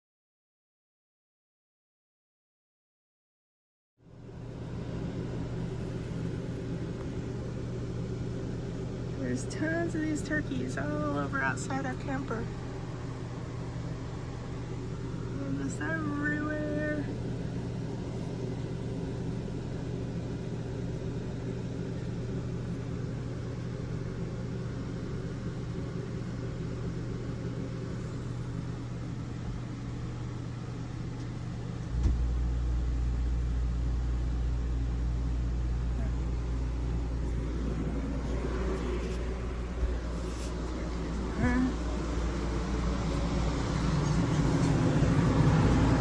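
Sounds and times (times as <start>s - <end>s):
steady mechanical hum: 4.0s - 46.0s
deep low rumble: 31.6s - 46.0s.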